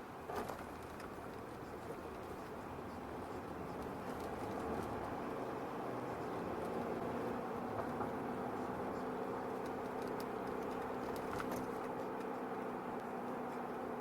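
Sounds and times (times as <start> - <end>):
car engine hum: 0.0 - 14.0
tyre and road noise: 0.0 - 14.0
faint clicks and crunches: 9.6 - 12.4.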